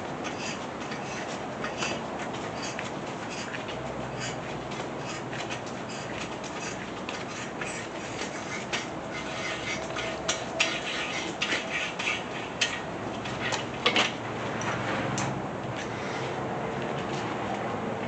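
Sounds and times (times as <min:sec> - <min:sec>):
light metal scraping: 0:02.6 - 0:16.4.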